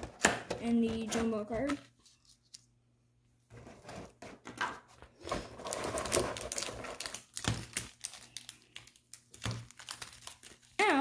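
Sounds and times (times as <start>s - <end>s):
packaging crinkling: 5.2s - 11.0s
plastic packaging clicks and taps: 6.4s - 8.2s, 8.8s - 10.2s.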